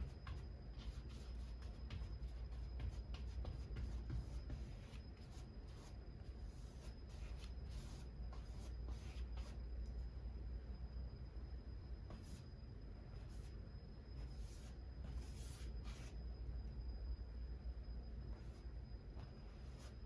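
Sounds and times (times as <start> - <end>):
paintbrush strokes on canvas: 0.0 - 9.6, 14.2 - 16.2, 18.3 - 20.0.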